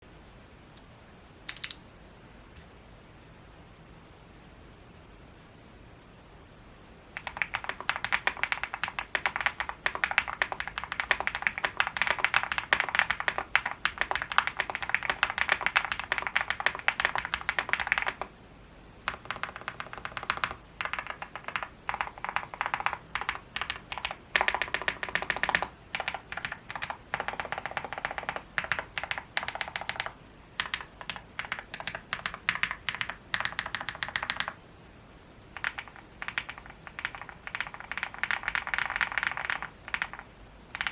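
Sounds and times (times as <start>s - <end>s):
mechanical keyboard typing: 1.5s - 1.8s, 7.2s - 18.3s, 19.1s - 34.6s, 35.6s - 40.9s.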